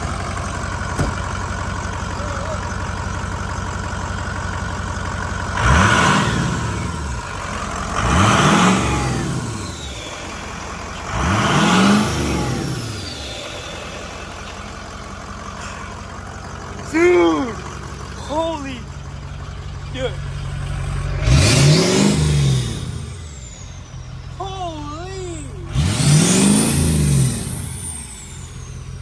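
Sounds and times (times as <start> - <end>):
diesel engine idling and revving: 0.0 - 29.0.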